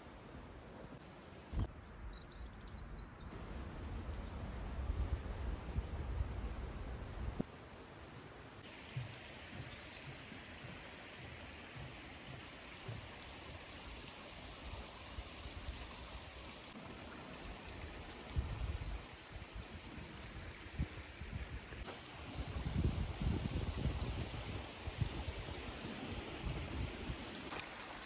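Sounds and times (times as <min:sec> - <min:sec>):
stream water rushing: 0:07.5 - 0:28.0.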